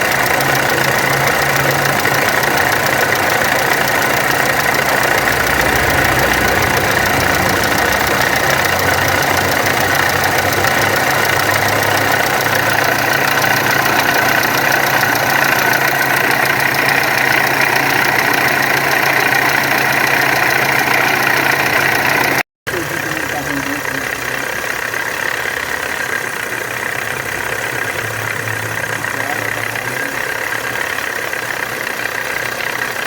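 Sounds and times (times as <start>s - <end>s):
diesel engine idling: 0.0s - 33.0s.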